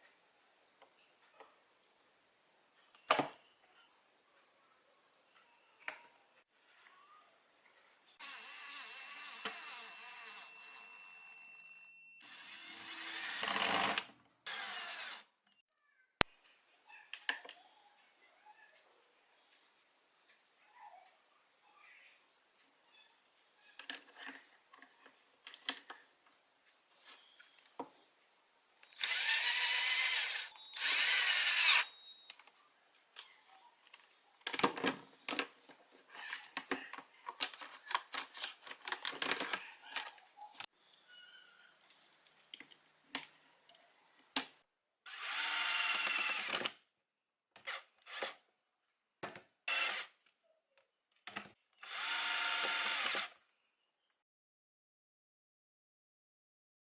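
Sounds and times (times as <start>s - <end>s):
power tool motor whirring: 8.2s - 10.8s, 12.2s - 15.3s, 28.8s - 32.2s, 45.1s - 46.7s, 49.7s - 50.1s, 51.8s - 53.3s
clicking and scraping: 31.8s - 40.7s.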